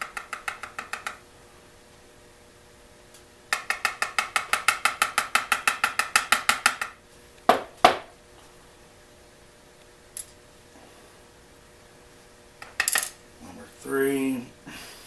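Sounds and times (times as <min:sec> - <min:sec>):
sharp knocks: 0:03.5 - 0:08.1.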